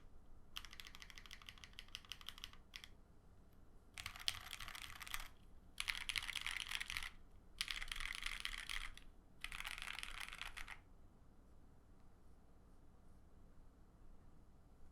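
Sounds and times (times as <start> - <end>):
mechanical keyboard keystroke rolls: 0.6 - 2.9, 4.0 - 10.8.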